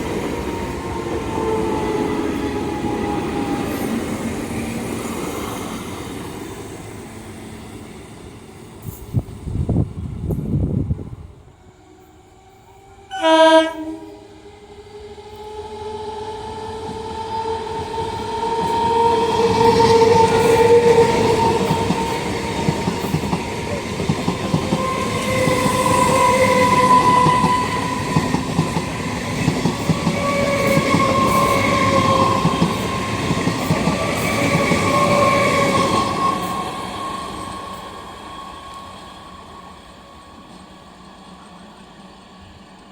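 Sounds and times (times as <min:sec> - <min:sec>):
train horn blasts: 0:12.6 - 0:14.3, 0:24.7 - 0:28.2
train wheels clattering on rails: 0:16.8 - 0:37.9.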